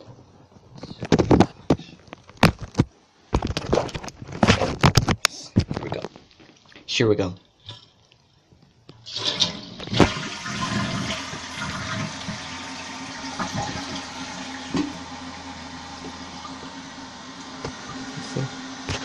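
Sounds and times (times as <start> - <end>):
toilet flushing: 9.0 - 19.0.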